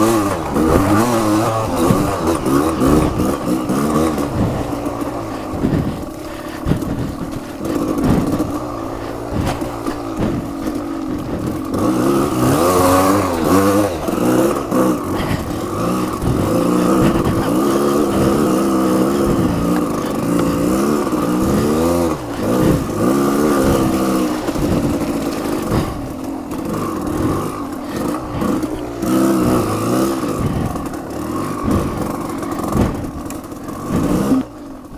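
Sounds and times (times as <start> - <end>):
off-road vehicle engine revving: 0.0 - 34.9
scrapes and knocks from vehicle: 0.0 - 34.9.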